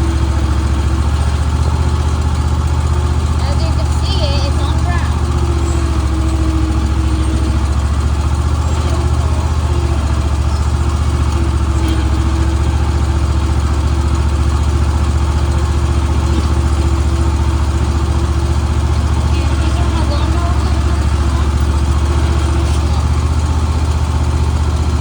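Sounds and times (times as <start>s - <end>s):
riding mower engine droning: 0.0s - 25.0s.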